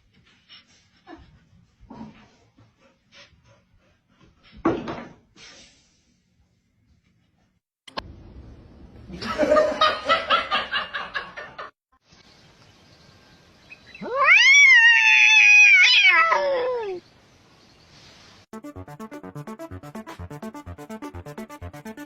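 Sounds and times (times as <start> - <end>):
cat yowling: 14.0 - 17.0
rapid pulsing sound: 18.5 - 22.0.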